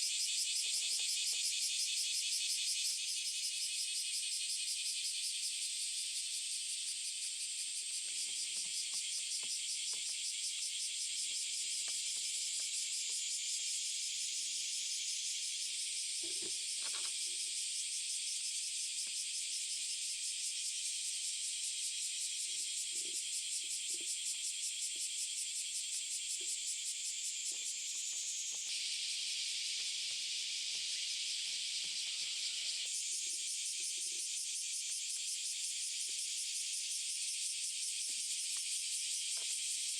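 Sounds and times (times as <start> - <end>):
insect chorus trilling: 0.0 - 39.9.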